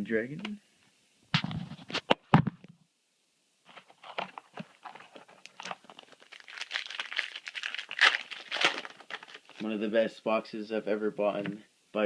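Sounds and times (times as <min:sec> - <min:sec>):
foil pack crinkling: 0:03.7 - 0:09.7.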